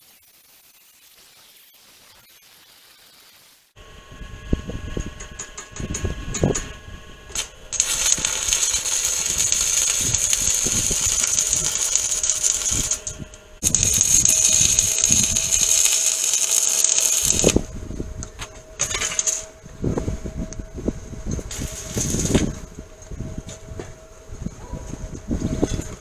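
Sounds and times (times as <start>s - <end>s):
angle grinder grinding steel: 7.4s - 17.7s, 18.6s - 19.7s, 21.4s - 22.7s.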